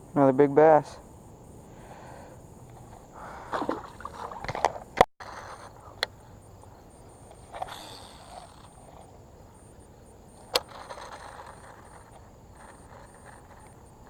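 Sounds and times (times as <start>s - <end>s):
faint outdoor background noise: 0.0s - 14.0s
fishing reel clicks: 7.3s - 9.0s, 10.4s - 13.8s.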